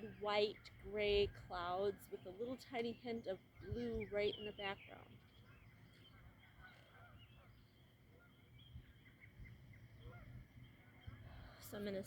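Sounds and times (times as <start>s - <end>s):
distant geese honking: 3.7s - 8.5s, 10.0s - 12.0s.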